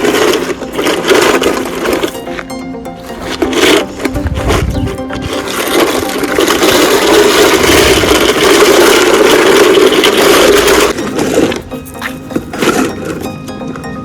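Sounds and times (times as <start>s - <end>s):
toy vehicle scraping through sand: 0.0s - 13.2s.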